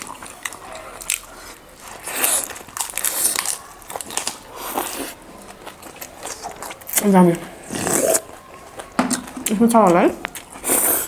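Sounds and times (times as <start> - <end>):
chewing meat on the bone: 0.0 - 11.0
wet mouth sounds: 6.3 - 11.0.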